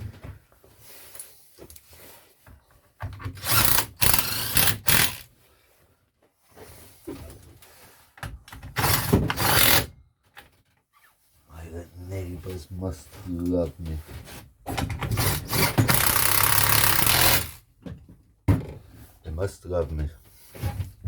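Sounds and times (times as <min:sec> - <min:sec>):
power drill driving screws: 0:03.3 - 0:05.3, 0:08.8 - 0:09.9, 0:15.0 - 0:17.6.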